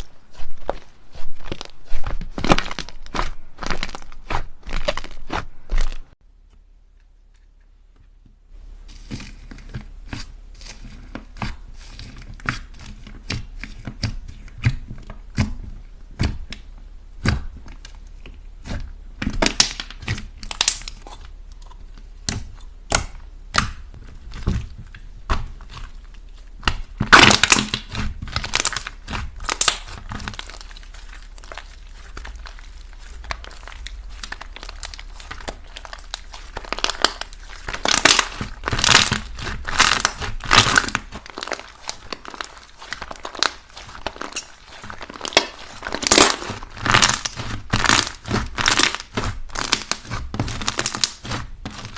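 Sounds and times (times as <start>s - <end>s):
slime crackling and popping: 0.3s - 6.2s, 17.2s - 51.9s.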